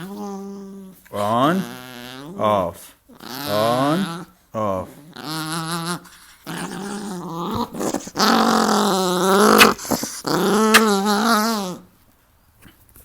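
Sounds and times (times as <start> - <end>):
dog wavering vocal noise: 3.2 - 11.8.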